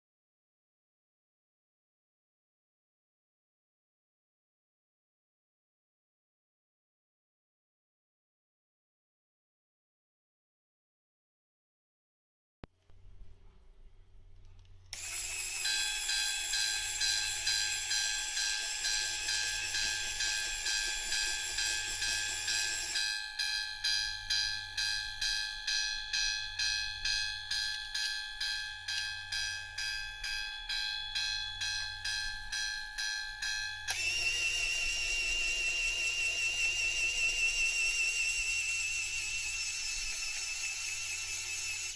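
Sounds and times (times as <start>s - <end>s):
electronic crossing warning bell ringing: 14.9s - 41.9s
small electric motor whine: 14.9s - 41.9s.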